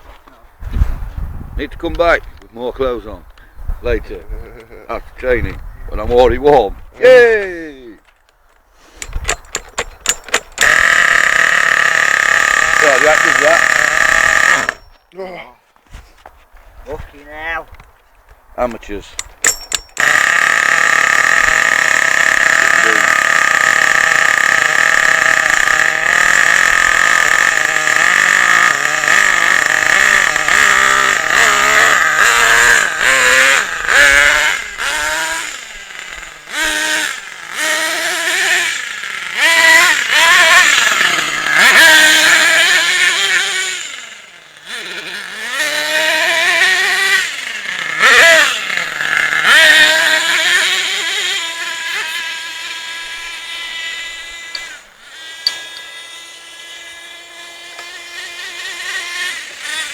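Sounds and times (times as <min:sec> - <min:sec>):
small two-stroke engine revving: 0:08.8 - 0:14.9, 0:19.4 - 0:59.9.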